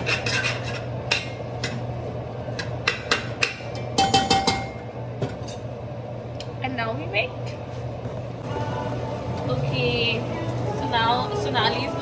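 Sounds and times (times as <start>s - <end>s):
metal spoon scraping a pan: 0.0s - 1.8s.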